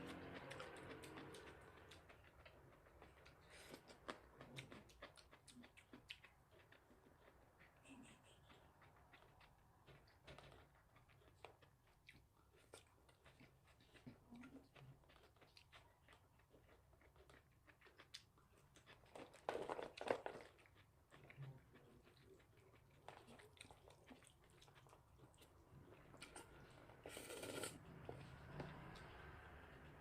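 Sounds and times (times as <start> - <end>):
chewing and wet mouth sounds: 0.0 - 30.0.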